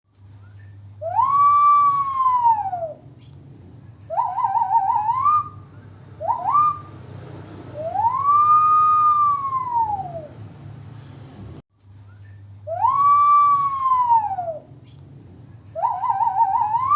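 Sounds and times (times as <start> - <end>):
person imitating police siren: 1.1 - 3.0, 4.1 - 5.5, 7.8 - 10.3, 12.7 - 14.7, 15.8 - 16.9.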